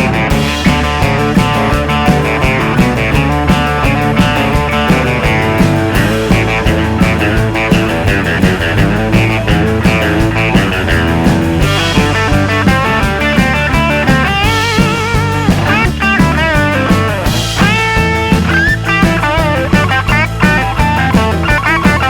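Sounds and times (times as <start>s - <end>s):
bending lead guitar line: 0.0s - 22.0s
rock music with guitar and drums: 0.0s - 22.0s.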